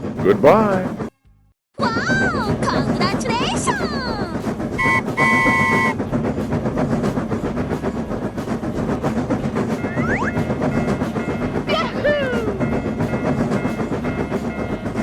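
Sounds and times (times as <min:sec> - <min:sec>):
train rumble: 0:00.0 - 0:01.1, 0:01.8 - 0:15.0
wheels clacking on rail joints: 0:01.8 - 0:15.0
two-tone train horn: 0:04.8 - 0:06.0.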